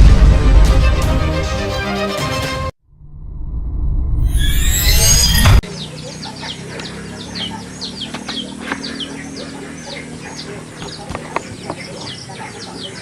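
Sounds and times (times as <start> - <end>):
music: 0.0 - 2.8
birds chirping: 4.3 - 13.0.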